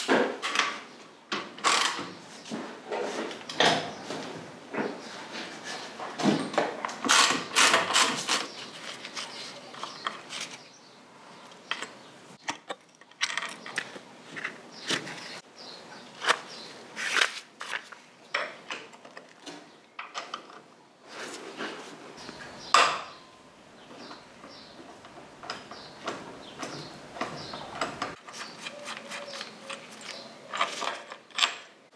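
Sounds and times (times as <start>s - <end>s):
tools and metal parts clinking: 11.7s - 15.4s, 27.5s - 31.8s.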